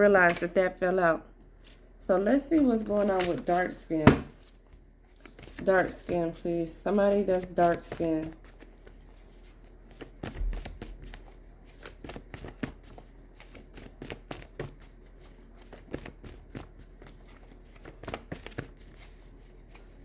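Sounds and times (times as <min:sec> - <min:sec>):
cards being shuffled: 0:02.6 - 0:20.0.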